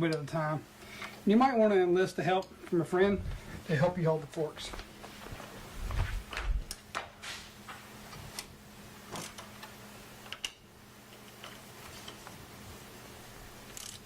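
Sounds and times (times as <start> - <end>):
allen wrench metallic clicks: 13.7 - 14.0.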